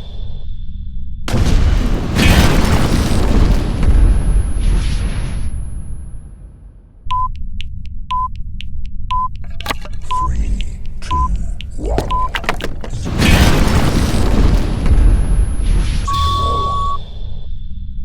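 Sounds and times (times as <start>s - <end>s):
low rumble: 0.8s - 6.8s, 9.6s - 18.0s
explosion rumble: 1.3s - 6.9s, 11.1s - 17.2s
short electronic beeps: 7.1s - 7.4s, 8.1s - 8.3s, 9.1s - 10.3s, 11.1s - 12.4s, 15.0s - 17.3s.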